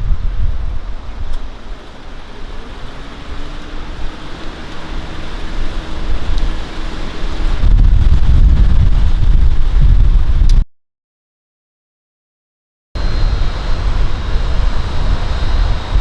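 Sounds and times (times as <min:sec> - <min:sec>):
vehicle engine hum passing: 0:00.0 - 0:10.1
steady outdoor hiss: 0:00.0 - 0:10.4, 0:13.0 - 0:16.0
wind rumbling on microphone: 0:00.0 - 0:10.6, 0:13.0 - 0:16.0.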